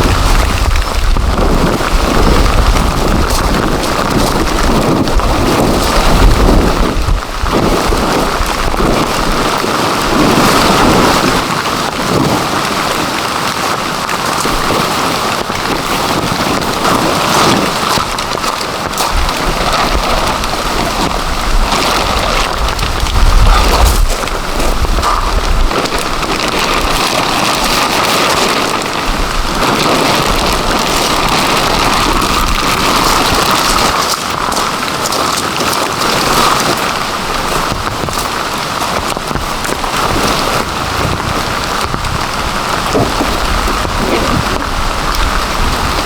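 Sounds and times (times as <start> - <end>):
heavy rain pouring: 0.0 - 46.0
deep low rumbles: 19.0 - 27.1.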